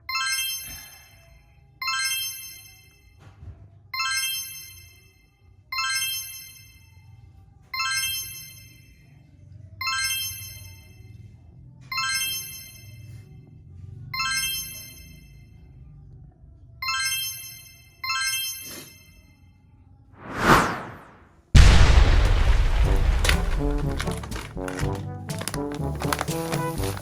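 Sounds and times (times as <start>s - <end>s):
bell-like electronic chime: 0.1s - 1.2s
steady low rumble: 21.6s - 24.1s.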